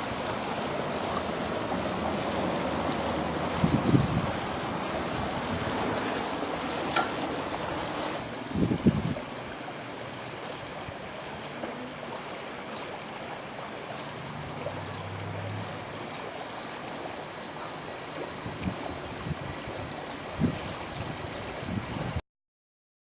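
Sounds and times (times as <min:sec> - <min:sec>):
stream water flowing: 0:00.0 - 0:22.2
low hum: 0:13.8 - 0:16.3.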